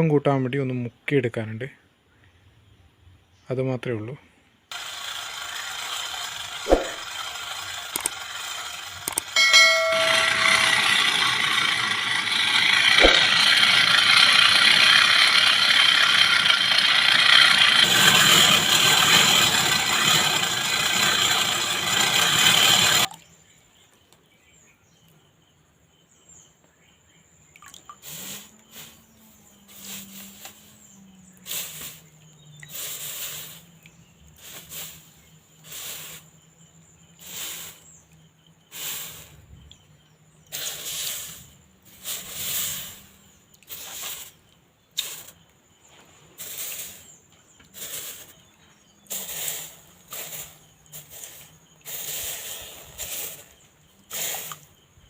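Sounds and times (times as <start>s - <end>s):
sharp clicks: 7.9s - 8.2s, 9.0s - 9.4s
low hum: 9.4s - 17.8s
fire roaring: 11.5s - 23.1s
scattered hissing: 28.0s - 33.7s, 34.4s - 36.4s, 37.2s - 37.9s, 38.7s - 39.5s, 40.5s - 44.4s, 45.0s - 45.4s, 46.4s - 48.4s, 49.1s - 54.7s.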